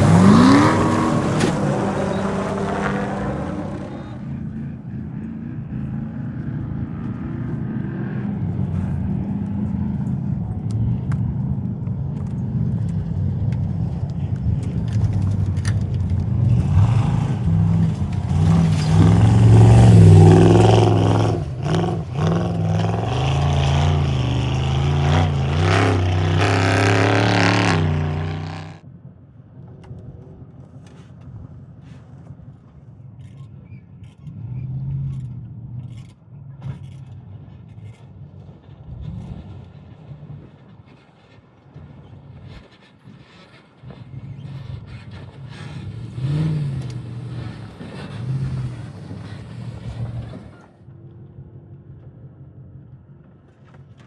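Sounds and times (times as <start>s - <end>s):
quiet engine rumble: 0.0s - 28.8s
truck engine racing by: 0.0s - 28.8s, 38.2s - 50.7s.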